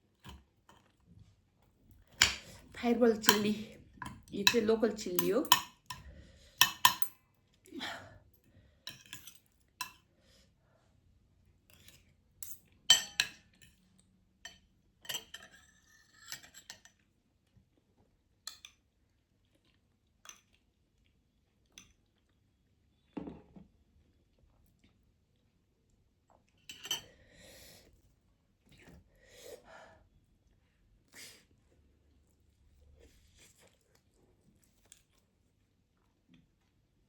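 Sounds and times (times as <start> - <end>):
cutlery clinking against dishes: 6.6 - 7.2, 8.9 - 10.0, 11.8 - 13.8, 14.5 - 17.0, 26.7 - 27.1.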